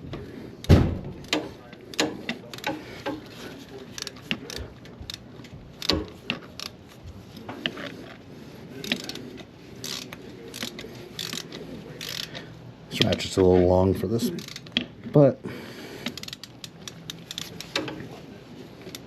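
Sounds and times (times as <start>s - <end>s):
socket ratchet clicking: 9.8s - 12.3s, 14.4s - 14.8s, 16.0s - 17.9s.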